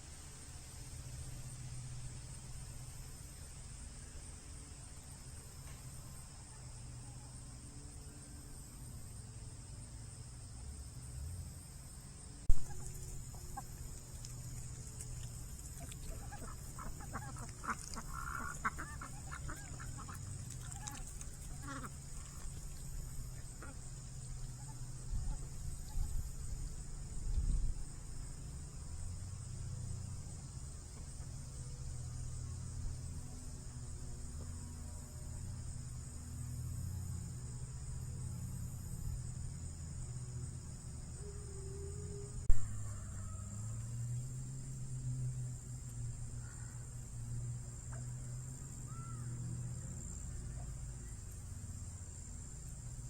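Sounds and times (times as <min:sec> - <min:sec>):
high insect chorus: 0:00.0 - 0:53.0
fowl clucking: 0:12.6 - 0:14.4, 0:15.0 - 0:22.5.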